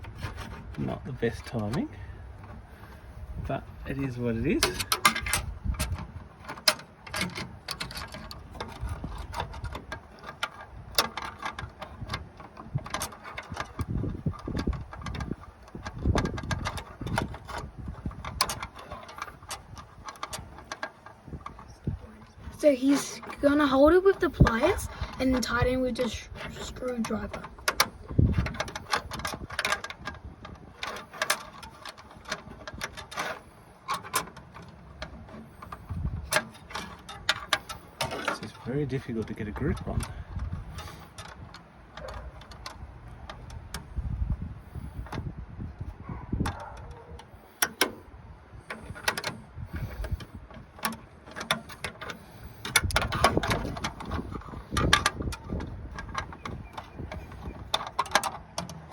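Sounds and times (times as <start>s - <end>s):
hand tools clicking and tapping: 3.9s - 45.3s, 46.0s - 58.9s.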